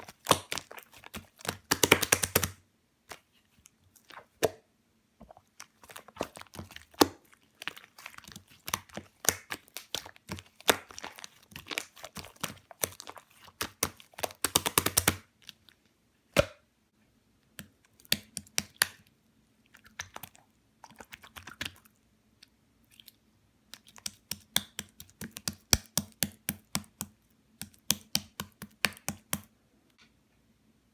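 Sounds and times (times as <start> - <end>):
slime crackling and popping: 0.0 - 3.2, 5.5 - 15.3.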